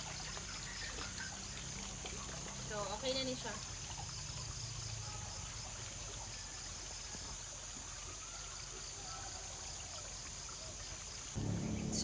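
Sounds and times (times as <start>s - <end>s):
water trickling: 0.0s - 9.0s.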